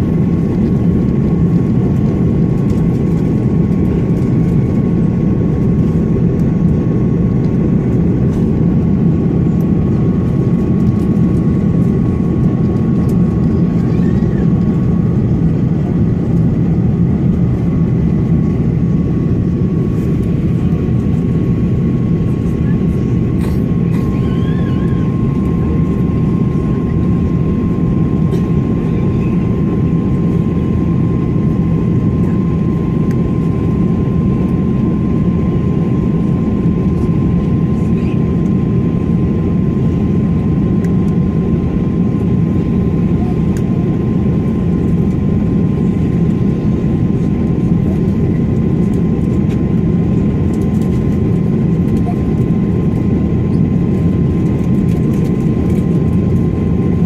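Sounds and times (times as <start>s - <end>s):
airliner cabin engine rumble: 0.0s - 57.0s.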